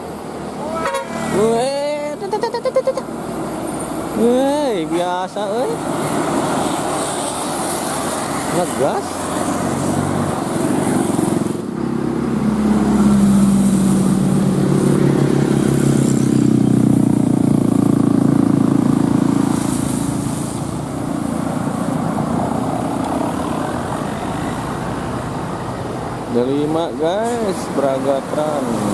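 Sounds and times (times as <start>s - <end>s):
vehicle engine accelerating: 6.4s - 24.2s.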